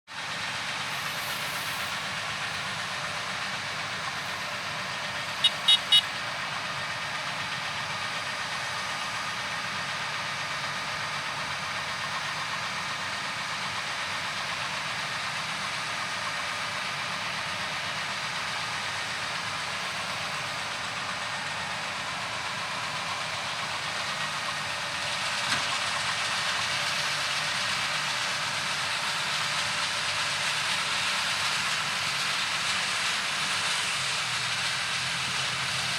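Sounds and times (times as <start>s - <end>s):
combine harvester running: 0.1s - 35.9s
short high-pitched chirps: 5.4s - 6.0s.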